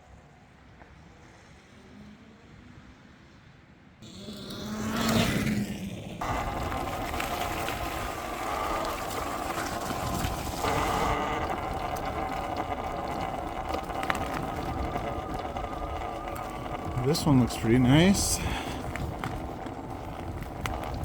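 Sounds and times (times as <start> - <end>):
electric bike motor hum: 4.0 - 21.0
riding rushing noise: 6.2 - 21.0.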